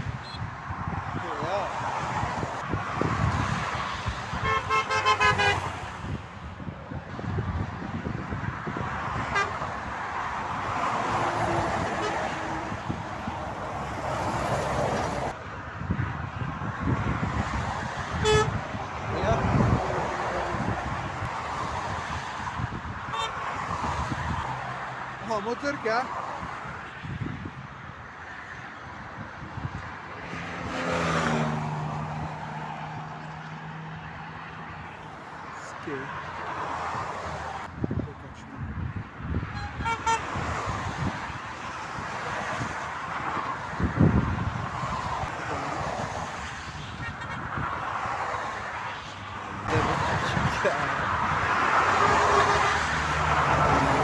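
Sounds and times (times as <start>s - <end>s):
motorway traffic passing: 0.0s - 54.0s
vehicle horn toot: 0.2s - 0.4s, 4.4s - 5.7s, 18.2s - 18.6s, 23.1s - 23.4s, 39.5s - 40.3s.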